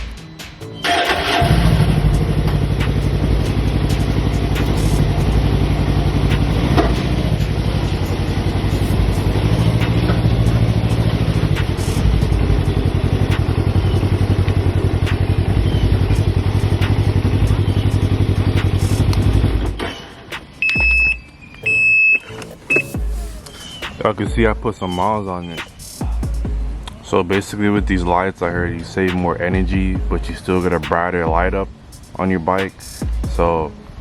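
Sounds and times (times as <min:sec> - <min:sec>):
engine idling: 0:00.0 - 0:19.9
short high beeps: 0:20.6 - 0:23.8.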